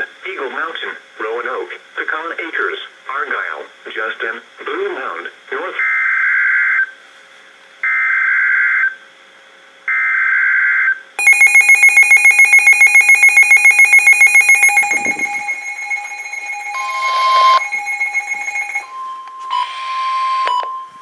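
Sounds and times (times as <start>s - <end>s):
warbling data tone bursts: 11.2s - 19.0s
electronic alarm beeping rapidly: 11.2s - 20.4s.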